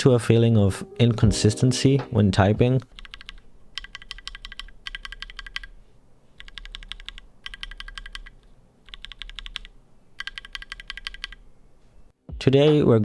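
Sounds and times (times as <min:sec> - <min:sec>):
mechanical keyboard typing: 0:02.9 - 0:05.8, 0:06.4 - 0:11.4.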